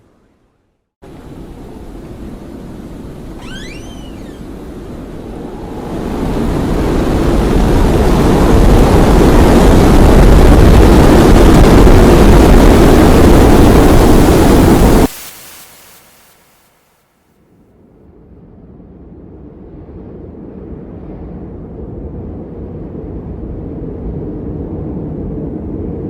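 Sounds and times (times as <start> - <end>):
strong wind rushing: 1.0 - 15.1.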